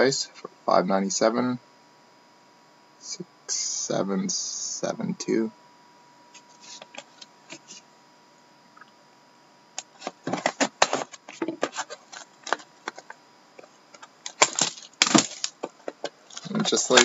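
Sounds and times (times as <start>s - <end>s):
cardboard and wrapper crinkling: 10.0s - 13.2s, 14.0s - 17.0s.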